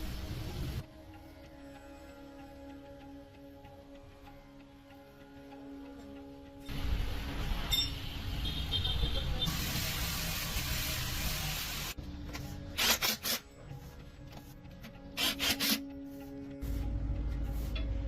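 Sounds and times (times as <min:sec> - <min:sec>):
background music: 0:00.0 - 0:09.2, 0:11.9 - 0:18.0.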